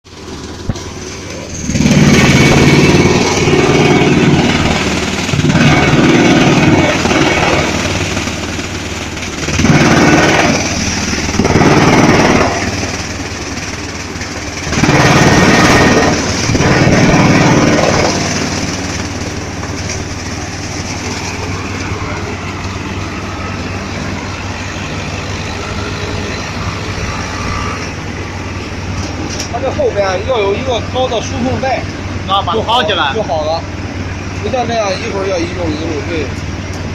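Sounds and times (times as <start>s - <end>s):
drum chipper grinding: 0.1s - 32.1s.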